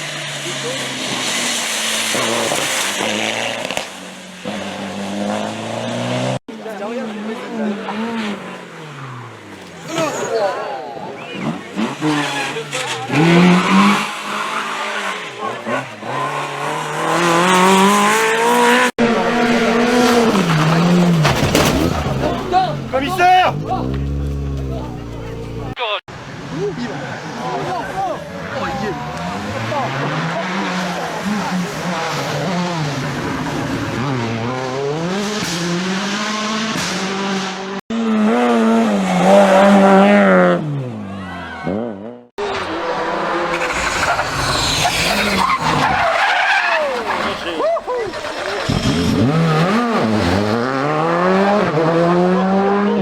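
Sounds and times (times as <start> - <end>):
rally car engine accelerating: 0.0 - 53.0.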